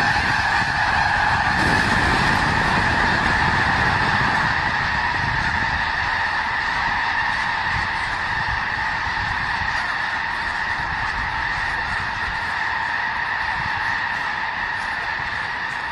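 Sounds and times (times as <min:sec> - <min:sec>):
flock of birds calling: 0:00.0 - 0:15.9.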